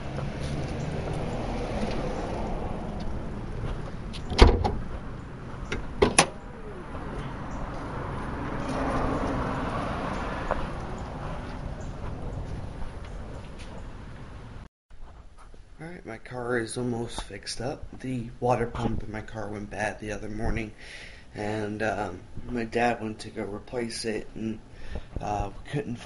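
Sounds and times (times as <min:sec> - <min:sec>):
vehicle engine rumble: 0:00.0 - 0:14.7.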